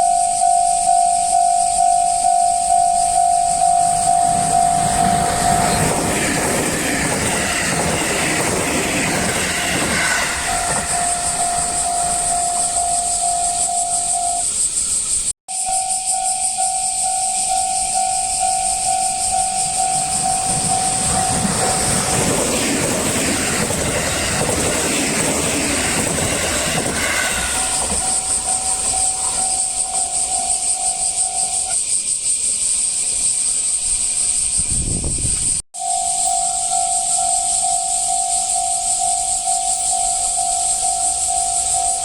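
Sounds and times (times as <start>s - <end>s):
level crossing alarm ding: 0.0s - 5.9s, 10.3s - 14.5s
train wheel and rail noise: 0.0s - 42.0s.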